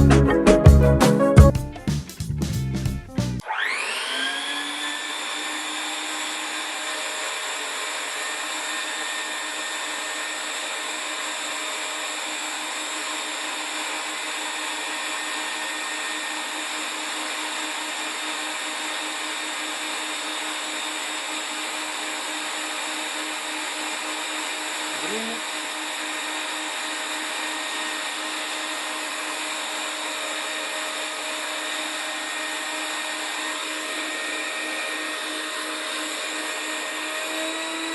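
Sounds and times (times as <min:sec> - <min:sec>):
vacuum motor whining: 0:03.4 - 0:37.9.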